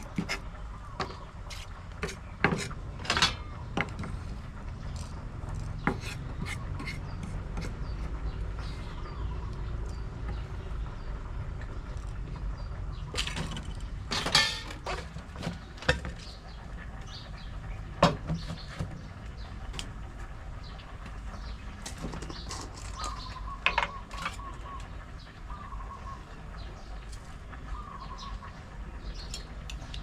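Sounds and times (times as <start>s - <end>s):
knocks and scrapes of kitchen work: 0.0s - 8.9s, 13.1s - 16.4s, 18.0s - 19.0s
steady low rumble: 0.0s - 23.7s
faint bird chirps: 22.4s - 30.0s.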